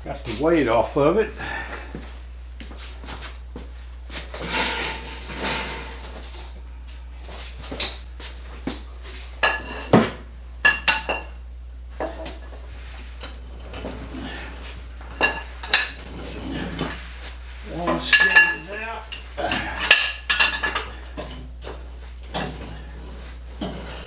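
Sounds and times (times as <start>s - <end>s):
metal scraping: 4.3s - 6.7s.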